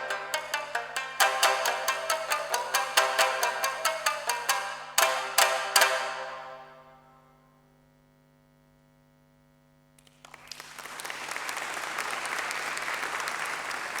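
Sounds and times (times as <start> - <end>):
shamisen notes: 0.0 - 7.3
audience applause: 10.0 - 14.0.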